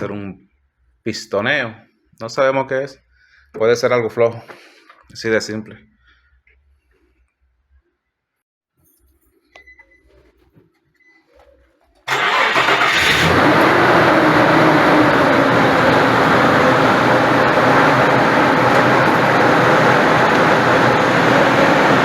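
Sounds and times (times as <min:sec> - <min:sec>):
car engine starting and idling: 0:12.0 - 0:22.0.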